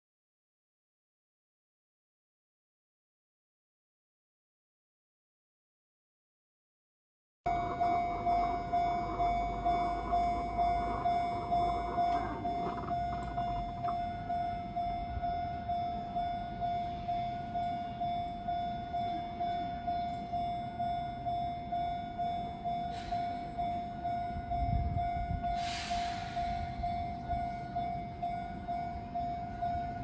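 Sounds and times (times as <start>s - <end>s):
low rumble: 7.5s - 16.8s
level crossing alarm ringing: 7.5s - 30.0s
hiss: 25.6s - 26.6s.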